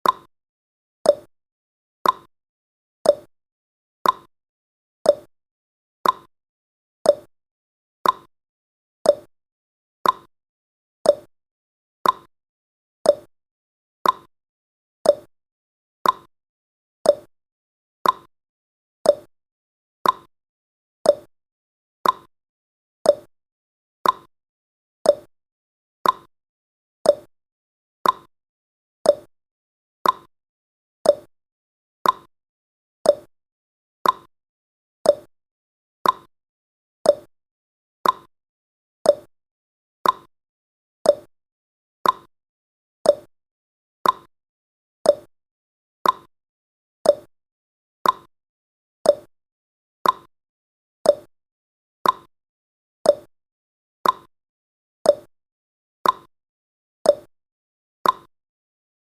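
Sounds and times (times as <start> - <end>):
clock ticking: 38.0 - 38.3, 42.0 - 42.3, 44.0 - 44.3.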